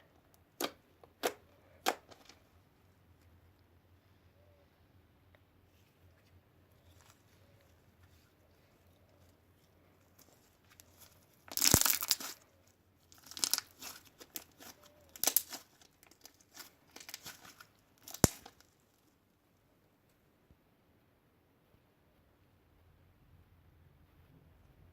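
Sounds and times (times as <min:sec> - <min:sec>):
slime crackling and popping: 0:10.2 - 0:12.4, 0:13.1 - 0:18.8.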